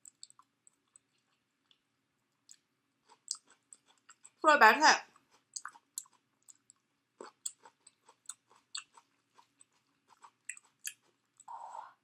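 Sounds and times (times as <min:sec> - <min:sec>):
wet mouth clicks: 0:00.0 - 0:01.8, 0:02.4 - 0:04.4, 0:05.4 - 0:11.5
crunchy chewing: 0:00.0 - 0:04.4, 0:05.1 - 0:11.6.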